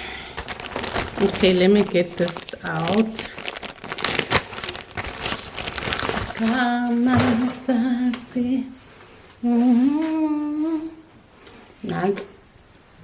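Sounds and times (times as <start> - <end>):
packaging crinkling: 0.3 - 8.1.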